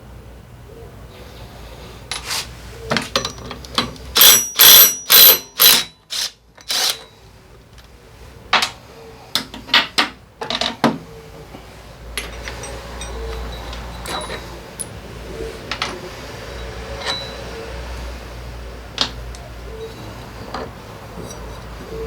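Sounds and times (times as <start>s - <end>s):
metal tools clanking: 2.9s - 7.2s, 12.1s - 17.8s, 19.0s - 22.0s.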